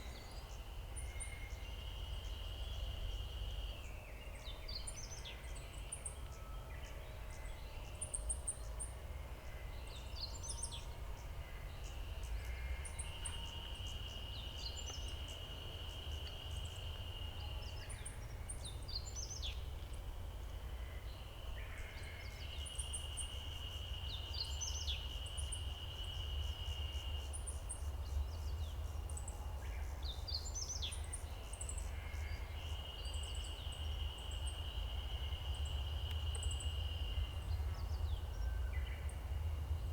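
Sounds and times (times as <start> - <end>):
songbird singing: 9.5 - 20.0, 21.1 - 39.9.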